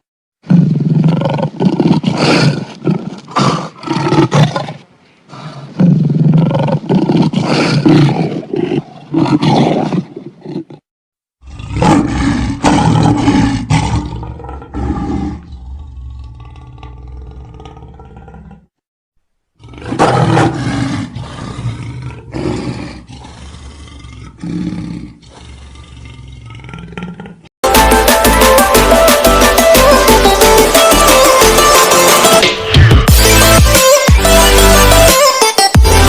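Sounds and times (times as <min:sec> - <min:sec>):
big cat roaring: 0:00.4 - 0:10.8, 0:11.4 - 0:18.7, 0:19.6 - 0:27.5.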